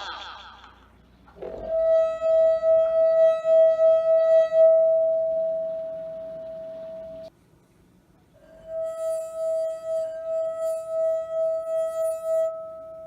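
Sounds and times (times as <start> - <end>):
rubbed rim ringing tone: 8.4 - 13.0.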